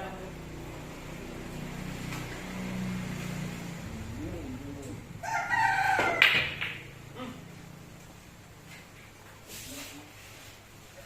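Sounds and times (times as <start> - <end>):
rooster crowing: 5.2 - 6.7.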